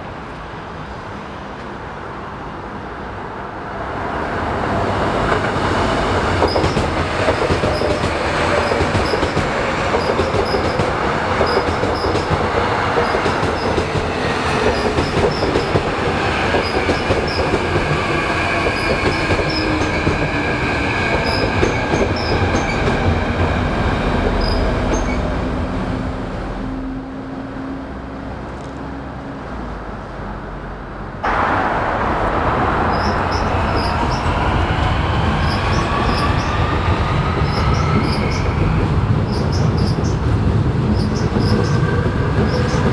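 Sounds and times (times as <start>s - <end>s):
rail rumble: 3.7s - 42.9s
train wheel squeal: 5.4s - 25.5s, 32.6s - 40.2s, 40.9s - 42.9s.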